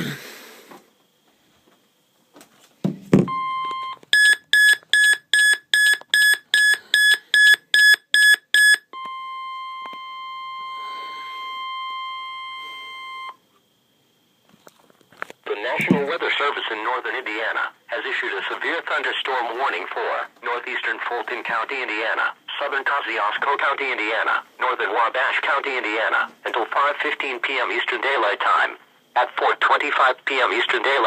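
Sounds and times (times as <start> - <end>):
thump: 2.8 - 3.3
rapid high beeps: 3.3 - 8.9
steady warning alarm tone: 3.3 - 13.4.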